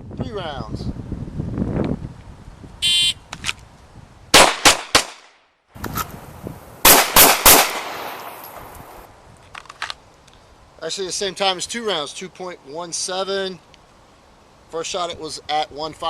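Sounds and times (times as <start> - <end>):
pistol shots: 4.4 - 5.3, 6.8 - 8.7.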